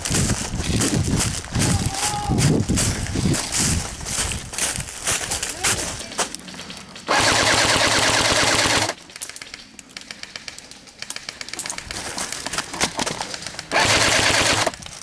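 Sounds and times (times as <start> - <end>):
airsoft rifle full-auto burst: 7.1 - 9.0, 13.7 - 14.8
faint airsoft fire clicks: 8.6 - 13.8.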